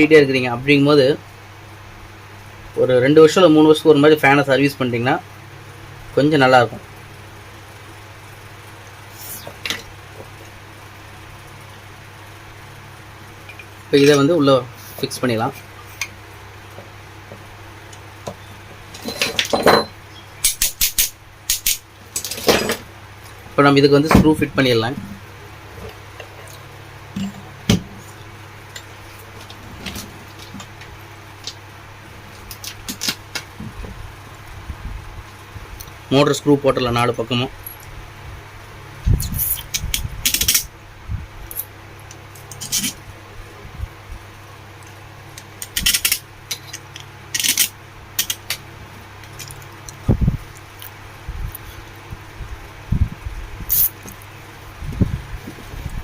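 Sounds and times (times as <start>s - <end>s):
steady low hum: 0.0s - 56.0s
clicks and knocks of metal parts: 19.0s - 22.8s, 32.4s - 33.5s, 39.7s - 40.7s, 45.4s - 48.6s.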